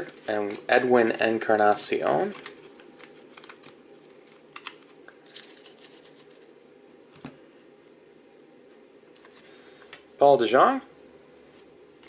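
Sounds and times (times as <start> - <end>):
cards sliding: 2.3 - 6.5.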